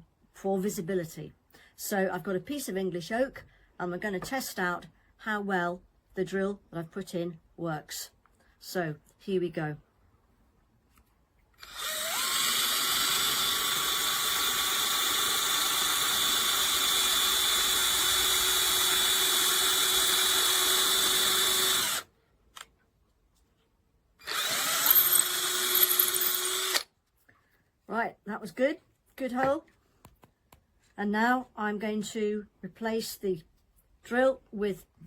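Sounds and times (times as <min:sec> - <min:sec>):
cordless drill boring wood: 0:11.6 - 0:22.1, 0:24.2 - 0:26.9.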